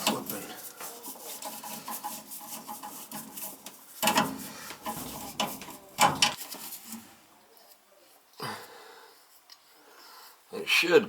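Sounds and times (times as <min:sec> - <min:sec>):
metal tools clattering: 0:00.0 - 0:06.6
sharp metal clanks: 0:04.0 - 0:06.4.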